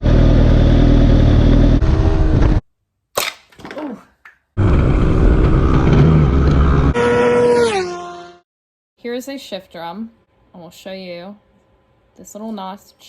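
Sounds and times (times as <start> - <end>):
motorcycle engine running hard: 0.0 - 2.4.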